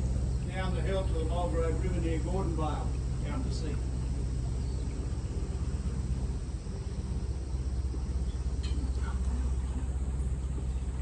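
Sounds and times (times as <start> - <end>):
boat engine humming: 0.0 - 11.0.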